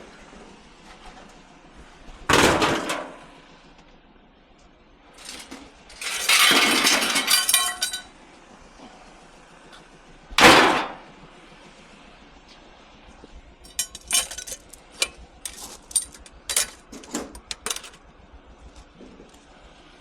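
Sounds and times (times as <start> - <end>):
metallic clinks and knocks: 13.7 - 18.0.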